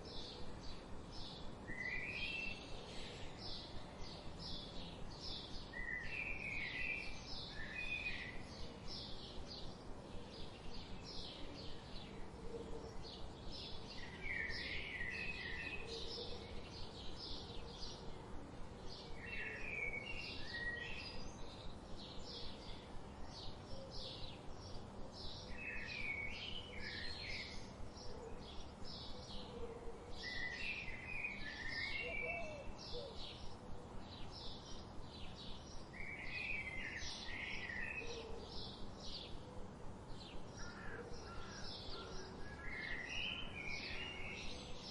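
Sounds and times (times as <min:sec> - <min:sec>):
outdoor background hiss: 0:00.0 - 0:44.9
bird chirping: 0:18.8 - 0:39.4, 0:40.0 - 0:44.9.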